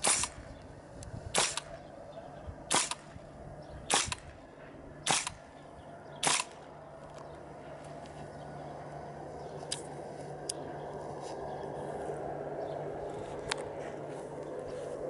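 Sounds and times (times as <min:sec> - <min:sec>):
airsoft rifle shots: 0:00.0 - 0:00.6, 0:01.3 - 0:01.8, 0:02.7 - 0:03.2, 0:03.8 - 0:04.4, 0:05.0 - 0:05.5, 0:06.2 - 0:06.7.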